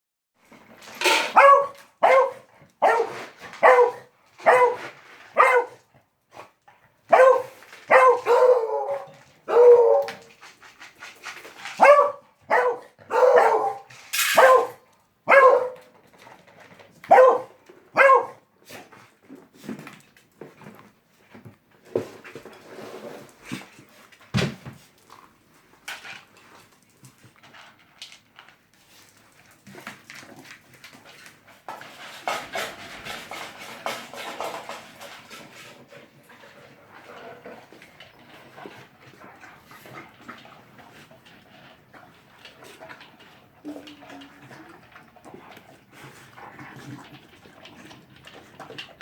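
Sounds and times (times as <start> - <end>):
dog barking: 1.3 - 4.8, 5.4 - 5.8, 7.1 - 10.1, 11.8 - 15.8, 17.1 - 18.4.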